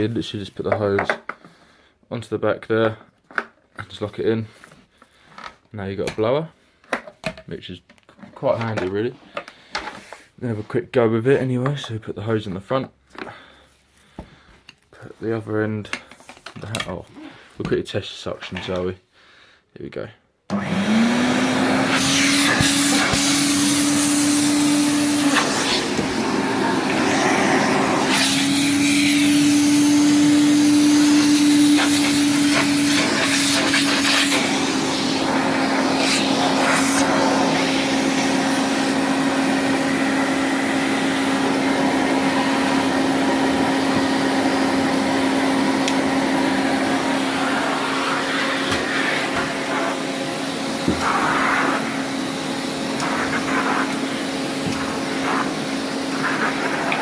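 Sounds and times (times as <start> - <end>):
vacuum cleaner motor whine: 20.5 - 57.0.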